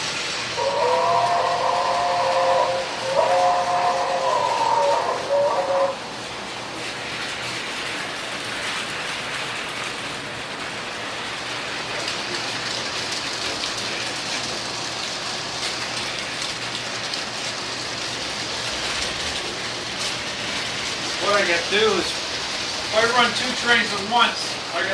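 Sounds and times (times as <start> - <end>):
model train running on track: 0.0 - 24.9
locomotive whistle: 0.6 - 6.1.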